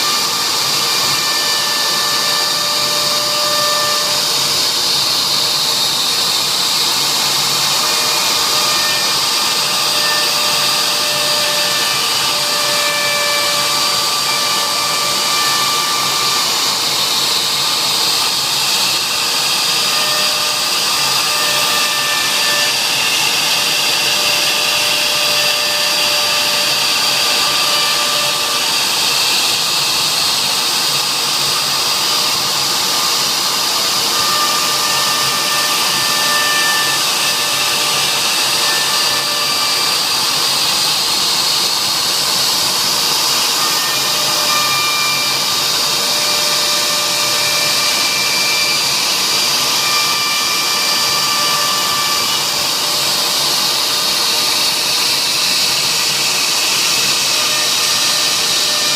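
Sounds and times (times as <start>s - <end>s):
router spindle whine and cutting: 0.0s - 58.9s.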